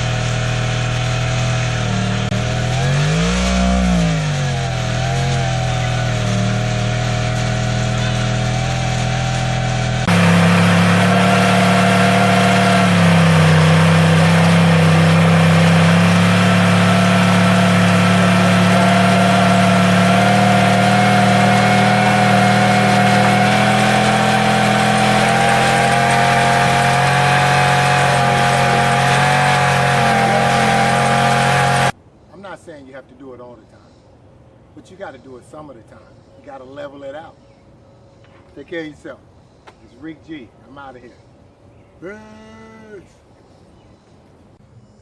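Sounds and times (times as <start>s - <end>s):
motorcycle engine at high revs: 0.0s - 32.0s.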